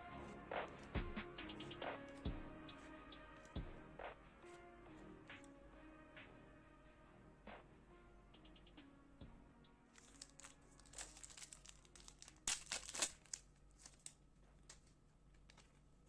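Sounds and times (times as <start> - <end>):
wrapper crinkling and tearing: 10.0 - 15.8.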